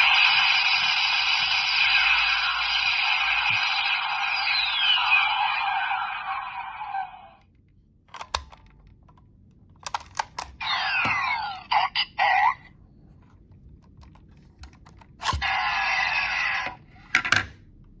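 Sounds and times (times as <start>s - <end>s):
electronic falling tone effects: 0.0s - 7.4s
plastic toy parts clicking: 8.1s - 9.2s, 9.8s - 10.6s.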